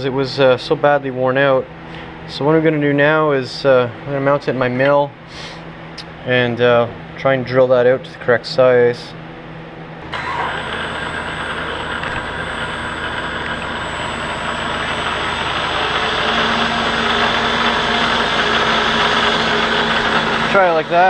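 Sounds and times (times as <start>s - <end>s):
milling machine motor whining: 10.0s - 21.0s.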